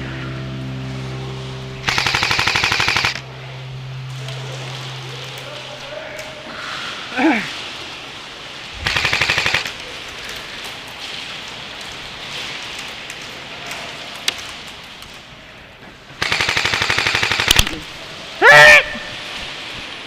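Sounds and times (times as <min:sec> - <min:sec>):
airsoft gun full-auto bursts: 0:01.8 - 0:03.2, 0:08.8 - 0:09.8, 0:16.2 - 0:17.8.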